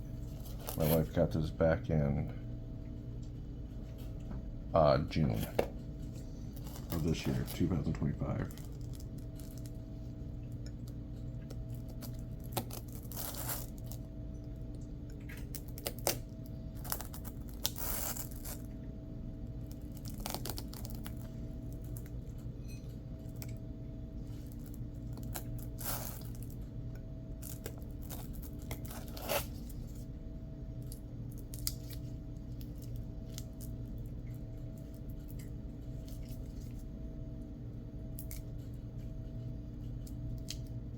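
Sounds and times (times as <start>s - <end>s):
steady low hum: 0.0s - 40.9s
rasping and tearing: 12.4s - 14.0s, 25.2s - 26.5s, 27.4s - 30.0s.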